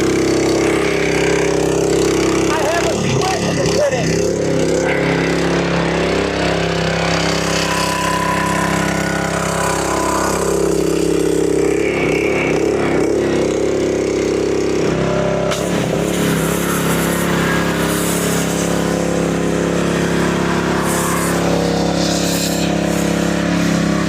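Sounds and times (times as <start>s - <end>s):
pressure washer engine running: 0.0s - 24.0s
water spray hissing: 15.6s - 24.0s.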